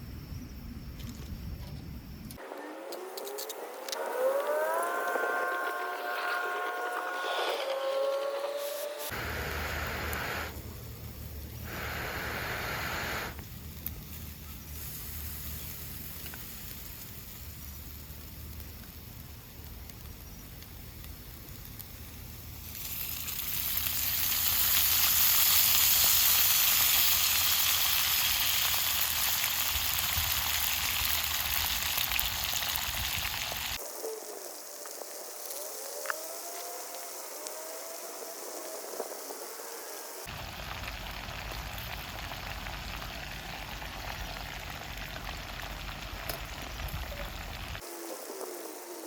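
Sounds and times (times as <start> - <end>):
food sizzling in hot oil: 8.0 - 33.8, 40.2 - 48.0.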